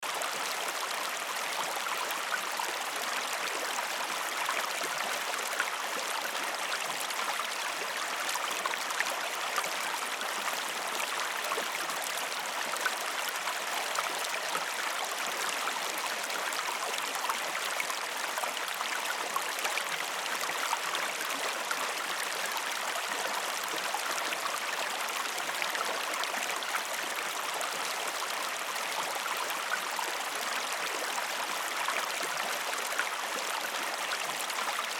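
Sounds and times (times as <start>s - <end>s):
river water flowing over rocks: 0.0s - 34.9s.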